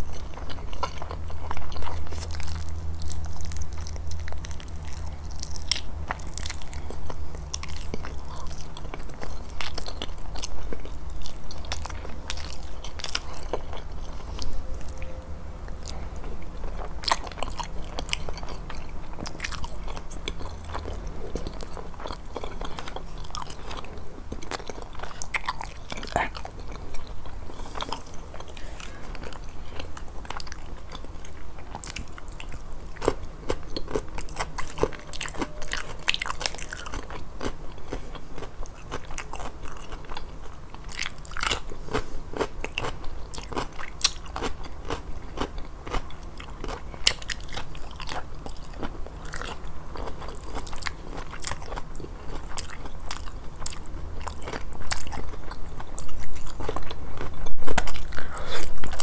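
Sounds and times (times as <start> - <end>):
crisp chewing crunches: 0.0 - 59.0
low steady hum: 0.0 - 59.0.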